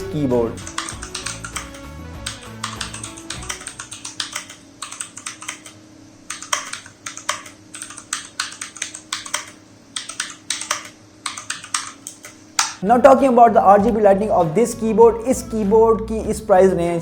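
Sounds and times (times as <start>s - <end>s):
clicky keyboard typing: 0.6s - 12.8s.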